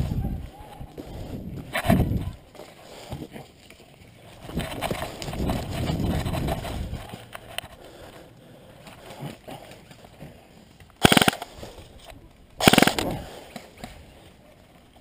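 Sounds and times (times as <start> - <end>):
airsoft gun rapid fire: 11.0 - 11.5, 12.6 - 13.1.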